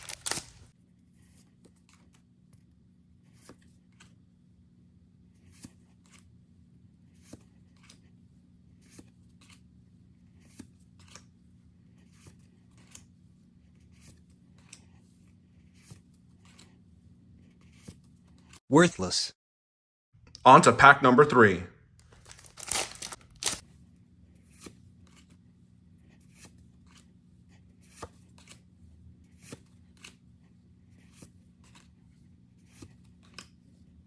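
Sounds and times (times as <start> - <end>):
cards rustling and ticking: 0.0 - 0.7, 22.0 - 23.6.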